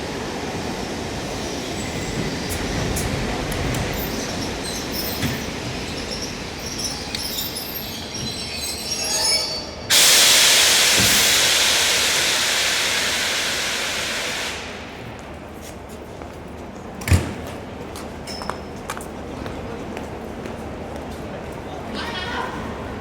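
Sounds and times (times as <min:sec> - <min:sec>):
train rumble: 0:00.0 - 0:23.0
train brakes squealing: 0:03.8 - 0:14.7
air brakes hissing: 0:09.9 - 0:15.0.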